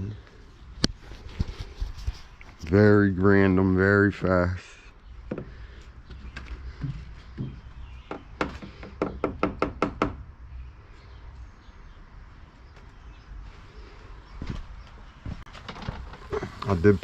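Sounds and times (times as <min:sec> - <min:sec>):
sharp knocks: 0:06.8 - 0:10.2.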